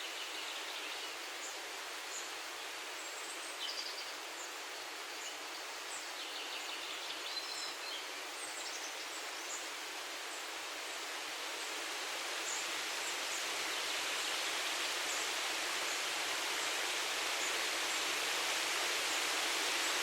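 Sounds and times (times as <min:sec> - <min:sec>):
breeze rustling tree leaves: 0:00.0 - 0:20.0.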